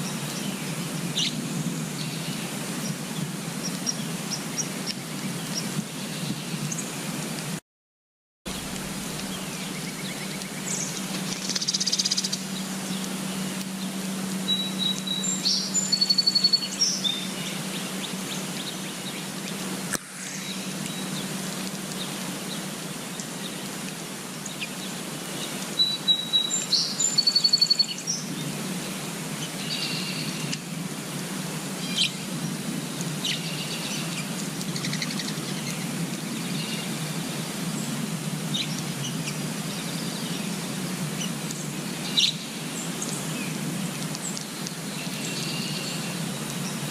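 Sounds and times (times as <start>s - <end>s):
outdoor background hiss: 0.0s - 7.6s, 8.5s - 46.9s
low hum: 8.5s - 18.7s
small birds chirping: 8.5s - 23.8s, 24.4s - 30.6s, 31.8s - 46.9s.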